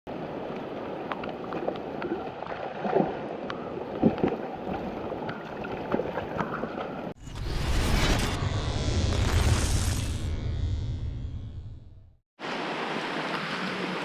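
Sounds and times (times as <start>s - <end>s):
water sloshing and splashing: 0.5s - 7.2s.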